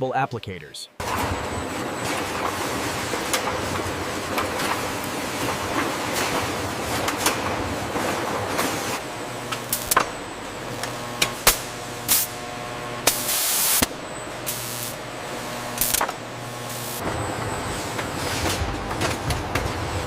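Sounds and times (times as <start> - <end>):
machinery humming: 0.9 - 20.0
short loud hiss of air: 13.1 - 13.9.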